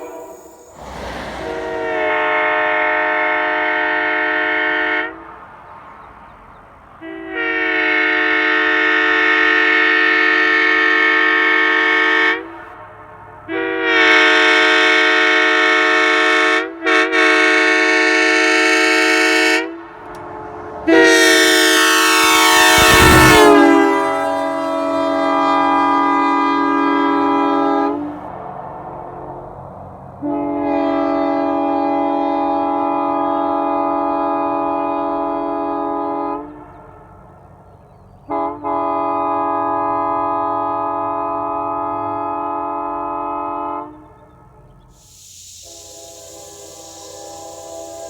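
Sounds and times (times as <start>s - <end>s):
locomotive air horn chord: 0.0s - 5.4s, 7.0s - 28.2s, 30.2s - 37.4s, 38.3s - 48.0s.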